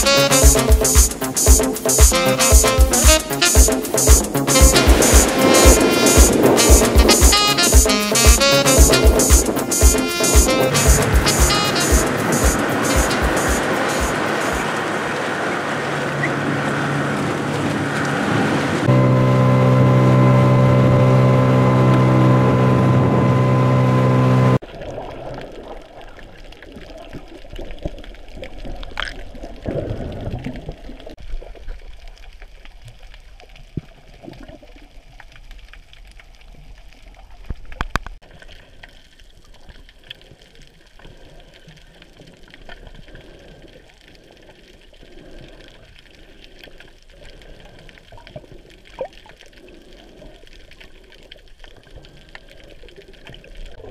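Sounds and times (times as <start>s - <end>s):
boat motor running: 0.0s - 24.6s.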